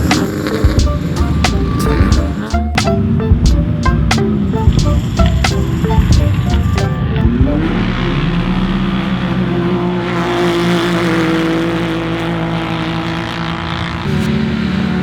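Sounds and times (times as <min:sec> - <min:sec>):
off-road vehicle engine running: 0:03.3 - 0:15.0.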